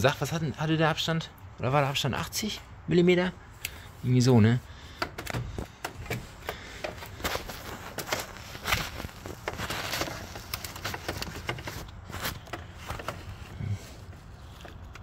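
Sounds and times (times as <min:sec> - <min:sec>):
hands handling metal parts: 0:04.9 - 0:15.0.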